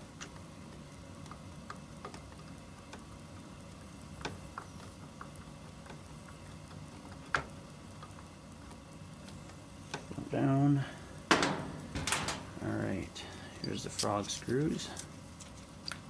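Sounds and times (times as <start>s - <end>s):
room heater humming: 0.0s - 16.0s.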